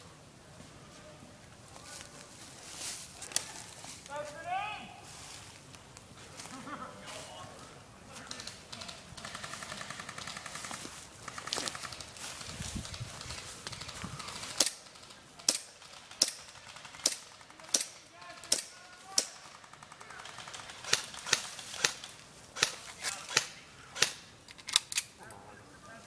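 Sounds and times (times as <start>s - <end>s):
airsoft gun shots: 20.4s - 24.2s.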